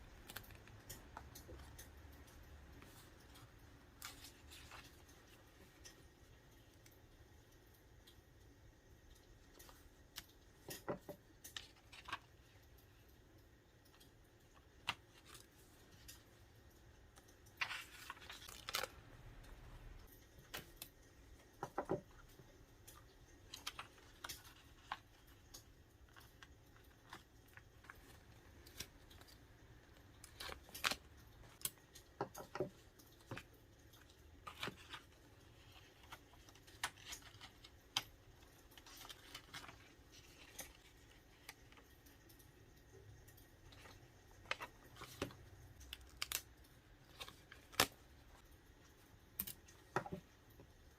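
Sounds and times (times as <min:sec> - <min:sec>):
faint background hiss: 0:00.0 - 0:50.9
light clicks and taps: 0:00.0 - 0:50.9
paper rustling: 0:00.2 - 0:06.0, 0:17.5 - 0:19.6, 0:23.4 - 0:41.8.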